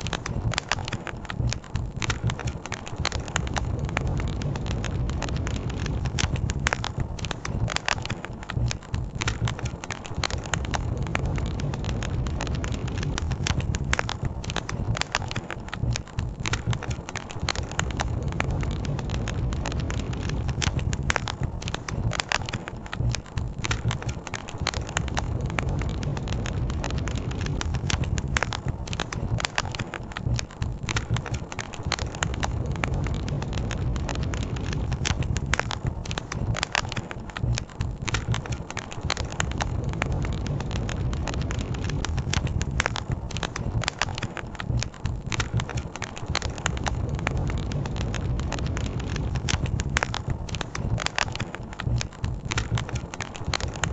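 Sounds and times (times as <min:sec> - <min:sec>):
campfire crackling and popping: 0:00.0 - 0:53.9
low rushing rumble: 0:03.4 - 0:07.7, 0:10.5 - 0:15.0, 0:17.7 - 0:22.2, 0:24.9 - 0:29.4, 0:32.2 - 0:36.6, 0:39.4 - 0:43.9, 0:46.6 - 0:51.0.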